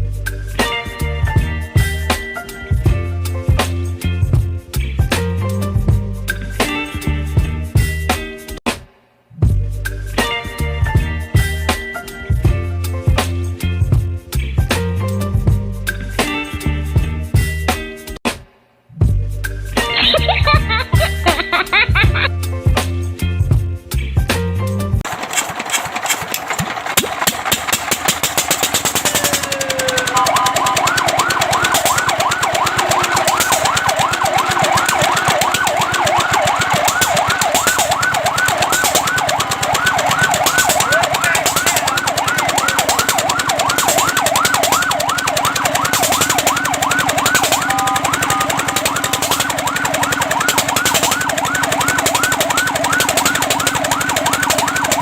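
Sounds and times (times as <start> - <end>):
rapid rattling: 25.0 - 55.0
fire truck siren yelping: 25.3 - 55.0.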